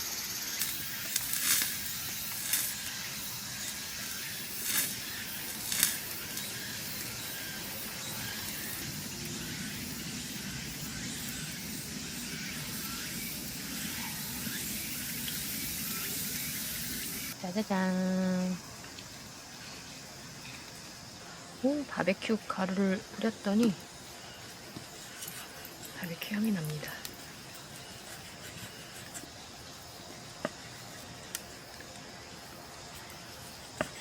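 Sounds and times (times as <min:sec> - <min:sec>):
meat sizzling on a grill: 0:00.0 - 0:17.4.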